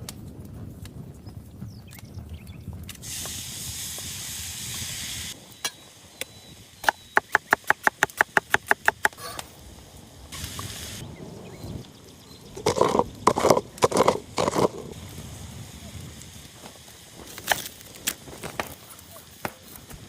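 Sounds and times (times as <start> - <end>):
hissing noise: 2.9 - 11.6.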